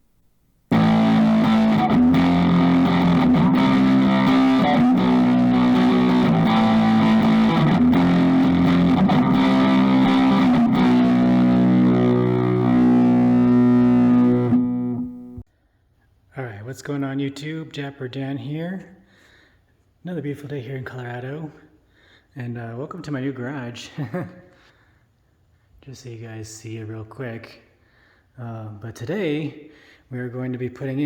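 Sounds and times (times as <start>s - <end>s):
distorted electric guitar chords: 0.7s - 15.4s.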